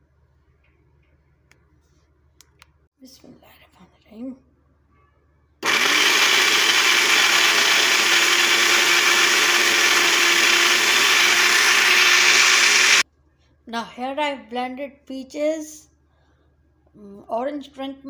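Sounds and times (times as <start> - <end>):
blender motor whirring: 5.6 - 13.0.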